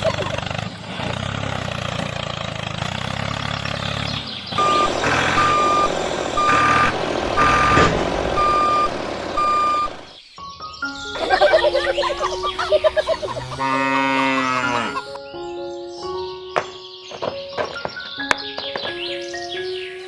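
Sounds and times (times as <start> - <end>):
vehicle motor running: 0.0 - 10.2, 11.7 - 15.2
reversing alarm beeping: 4.6 - 10.1.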